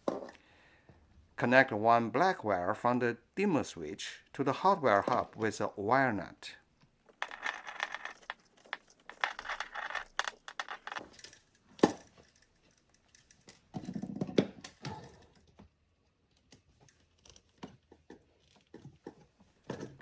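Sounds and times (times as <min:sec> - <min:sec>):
wires and wire nut rustling: 0:07.1 - 0:13.6.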